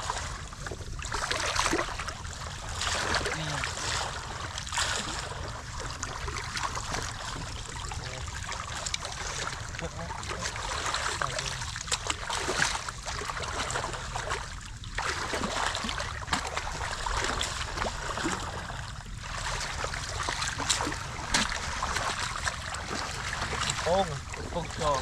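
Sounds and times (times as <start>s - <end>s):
shallow water splashing: 0.0s - 25.0s.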